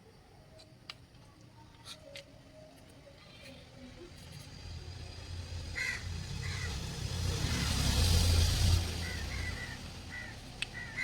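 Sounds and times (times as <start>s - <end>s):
vehicle engine rumble passing: 3.7s - 11.0s.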